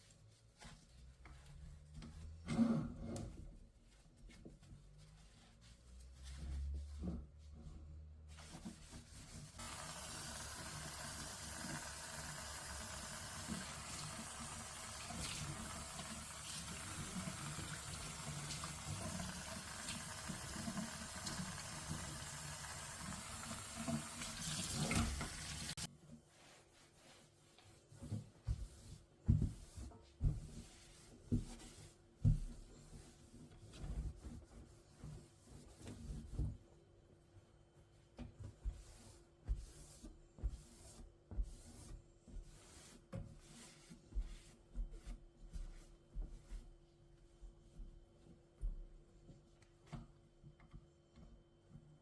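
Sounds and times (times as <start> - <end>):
tap water running into sink: 9.6 - 25.9.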